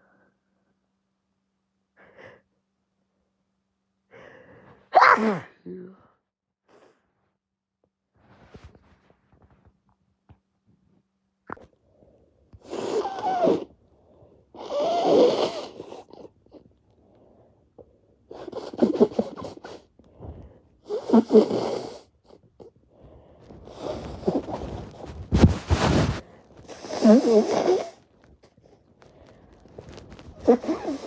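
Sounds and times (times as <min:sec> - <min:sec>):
person blowing nose: 0:12.6 - 0:13.7, 0:14.6 - 0:16.3, 0:18.3 - 0:19.9, 0:20.8 - 0:22.4, 0:23.6 - 0:28.1, 0:29.7 - 0:31.0.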